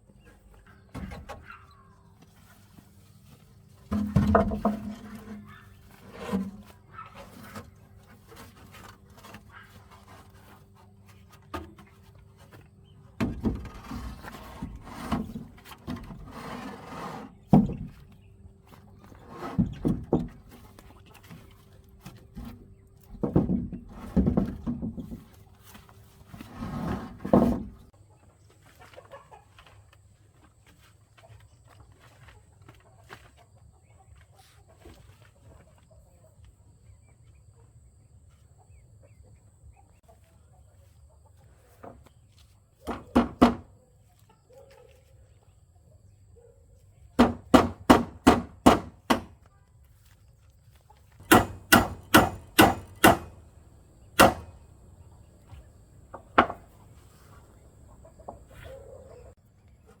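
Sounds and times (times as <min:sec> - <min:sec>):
chickens clucking: 0:00.0 - 0:13.2, 0:27.8 - 0:43.2, 0:50.7 - 1:00.0
sharp blows on wood: 0:47.2 - 0:49.3, 0:51.3 - 0:53.5, 0:54.1 - 0:54.6.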